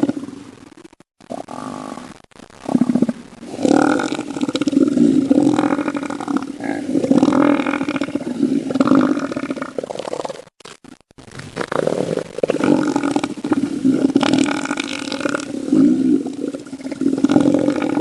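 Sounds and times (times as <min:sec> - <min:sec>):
elephant seal bellowing: 0:02.7 - 0:09.9, 0:11.5 - 0:18.0.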